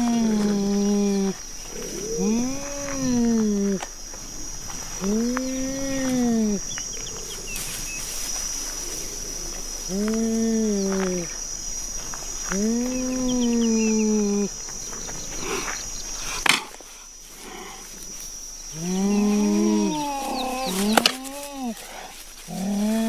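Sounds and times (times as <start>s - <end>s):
big cat calls: 0.0s - 3.9s, 18.7s - 23.0s.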